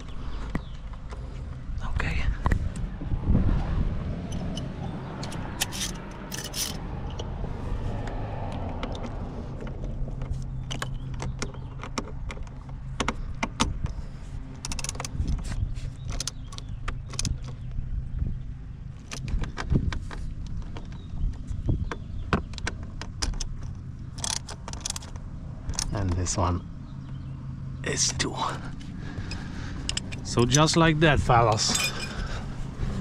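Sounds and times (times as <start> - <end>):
hand tools clicking and knocking: 31.5 - 32.2.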